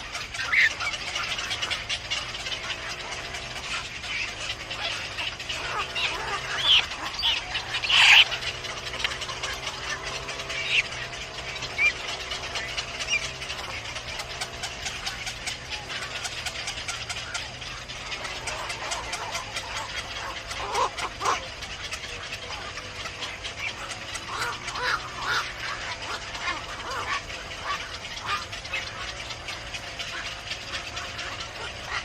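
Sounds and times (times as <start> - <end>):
birds calling: 0.0 - 32.0.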